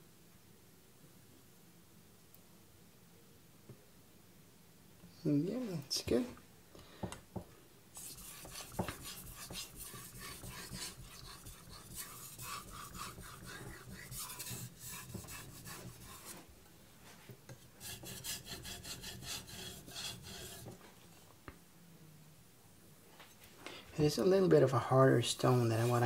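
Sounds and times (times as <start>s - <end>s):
knife blade scraping on whetstone: 8.0s - 16.4s, 17.8s - 20.7s.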